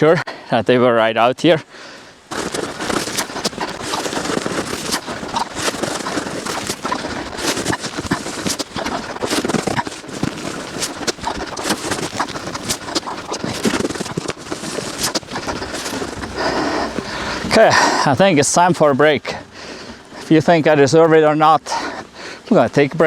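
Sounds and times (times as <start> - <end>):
snow shovel scraping snow: 2.3 - 17.9.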